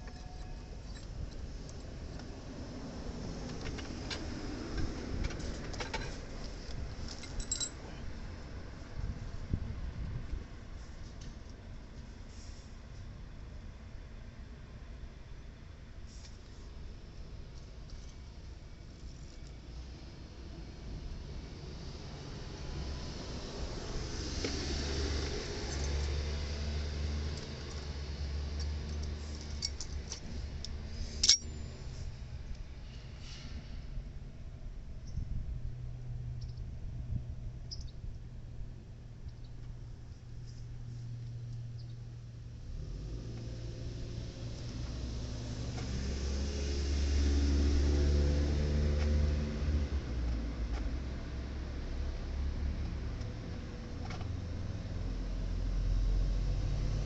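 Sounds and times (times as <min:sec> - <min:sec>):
sharp ringing metallic clink: 0:07.4 - 0:07.8, 0:31.2 - 0:31.8.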